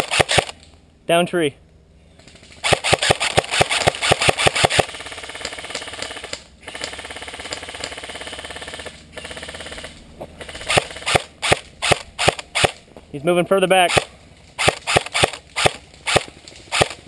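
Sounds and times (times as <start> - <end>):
airsoft guns firing: 0.0 - 0.6, 2.6 - 12.8, 13.7 - 17.0.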